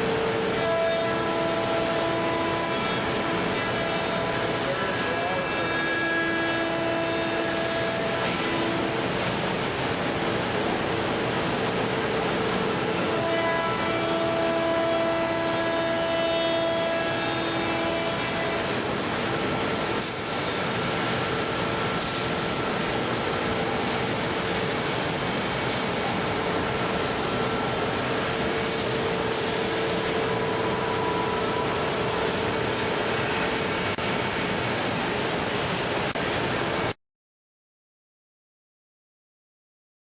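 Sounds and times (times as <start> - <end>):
machining center whining: 5.9 - 36.9.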